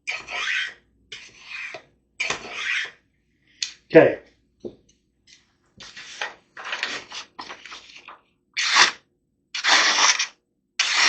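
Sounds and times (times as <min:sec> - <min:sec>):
knife slicing through paper: 0:05.9 - 0:09.0, 0:09.6 - 0:11.0.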